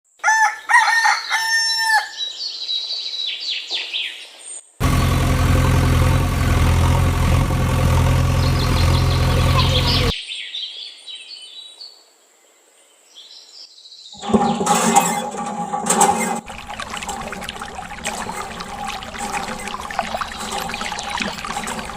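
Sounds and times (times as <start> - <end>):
rooster crowing: 0.2 - 2.2
birds calling: 7.7 - 10.1, 16.4 - 21.9.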